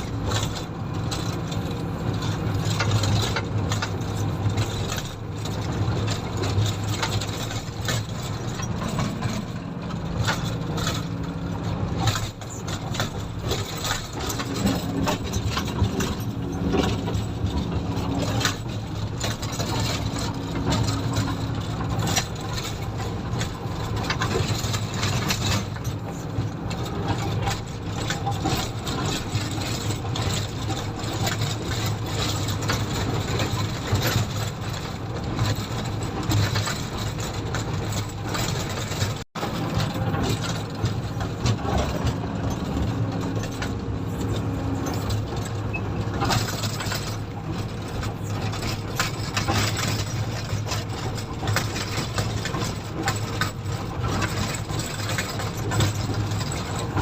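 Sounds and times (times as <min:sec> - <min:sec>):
clicks and rattles: 0:00.0 - 0:57.0
diesel engine running: 0:00.0 - 0:57.0.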